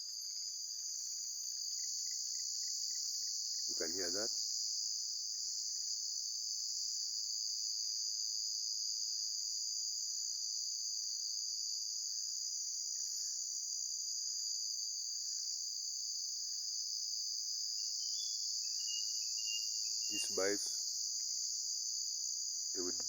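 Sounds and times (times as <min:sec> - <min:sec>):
crickets chirping chorus: 0:00.0 - 0:23.0
faint low calls: 0:20.1 - 0:20.7.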